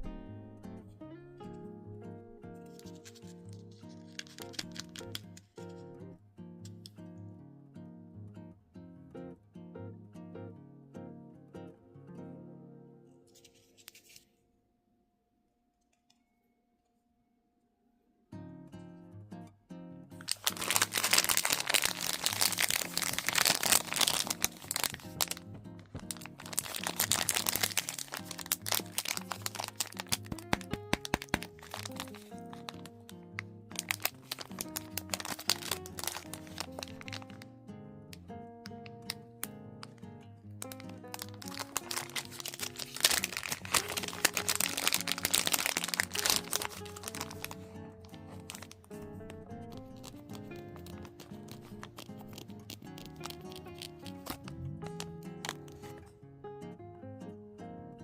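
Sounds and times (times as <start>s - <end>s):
acoustic guitar music: 0.0s - 13.5s, 18.3s - 58.0s
packaging crinkling: 2.7s - 5.7s, 20.2s - 37.5s, 40.6s - 56.0s.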